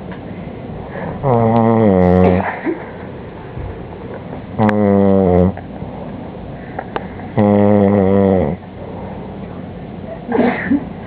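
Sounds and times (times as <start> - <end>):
breathing: 0.3 - 1.2, 6.5 - 7.4
person snoring: 1.0 - 2.4, 4.6 - 5.6, 7.3 - 8.6.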